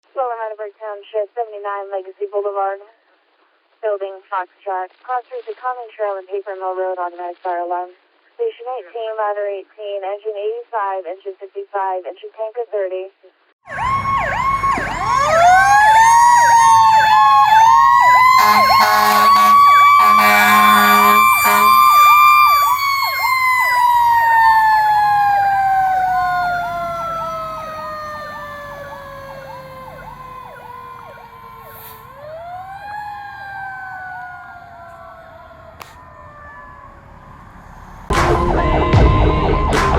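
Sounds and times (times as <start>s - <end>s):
electronic siren sweeps: 13.7s - 39.9s
air horn blasts: 18.3s - 22.2s.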